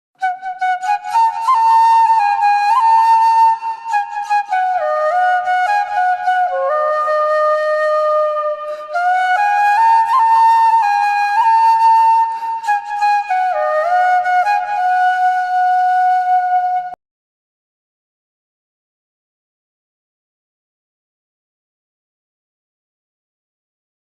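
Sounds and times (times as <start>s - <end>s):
slow sliding flute-like melody: 0.2s - 17.0s.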